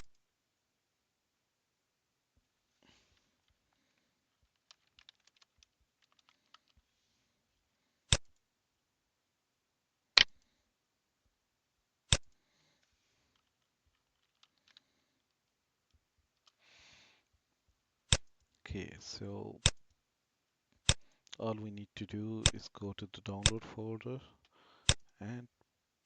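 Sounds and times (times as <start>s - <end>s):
keyboard and mouse clicks: 4.5s - 6.8s, 22.4s - 22.6s, 23.4s - 23.7s
loud sharp clicks: 8.1s - 8.4s, 12.1s - 12.4s, 19.6s - 19.9s, 20.8s - 21.1s, 23.4s - 23.7s, 24.8s - 25.1s.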